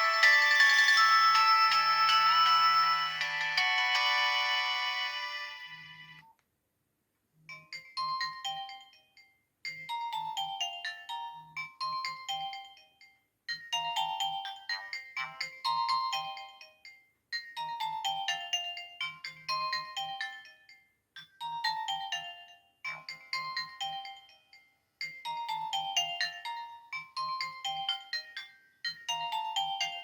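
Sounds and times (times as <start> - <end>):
phone ringtone beeping melody: 0.0 - 6.2.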